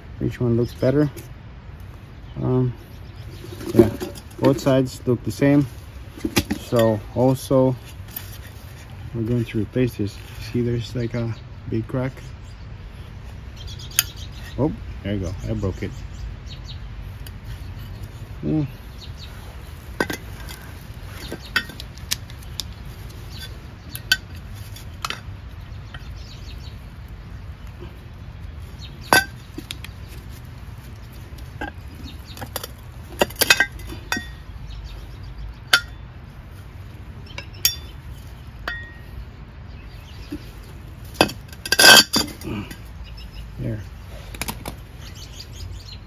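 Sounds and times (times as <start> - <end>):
small tools clinking: 20.0 - 22.7, 29.1 - 34.5, 41.1 - 42.9.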